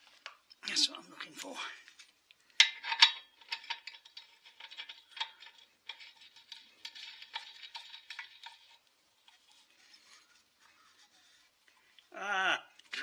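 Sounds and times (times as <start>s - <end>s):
metallic clicks and scrapes: 2.4s - 11.9s.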